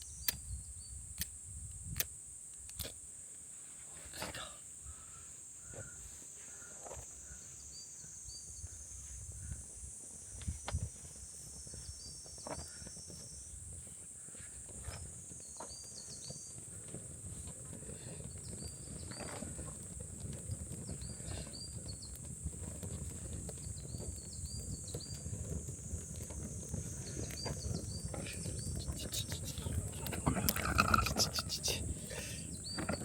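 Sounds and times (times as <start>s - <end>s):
insects droning: 0.0s - 33.0s
rumble of flame: 16.7s - 33.0s
wood fire crackling: 19.4s - 33.0s.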